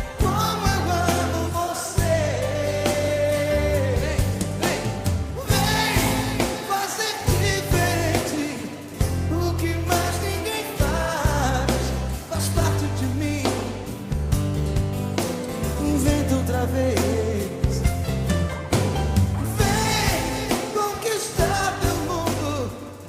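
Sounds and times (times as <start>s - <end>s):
song with held sung notes: 0.0s - 13.8s, 19.2s - 23.0s.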